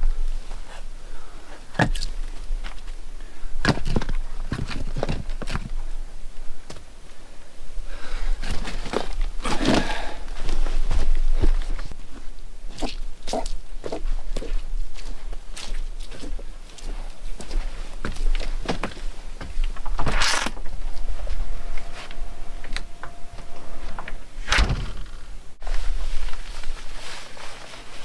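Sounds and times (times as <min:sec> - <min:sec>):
footsteps: 0:16.8 - 0:28.0
scraping rustle: 0:17.7 - 0:28.0.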